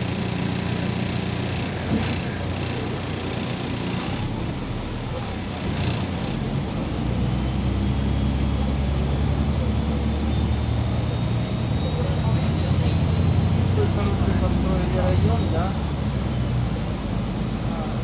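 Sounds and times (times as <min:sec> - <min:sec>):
bus diesel engine drone: 0:00.0 - 0:18.0.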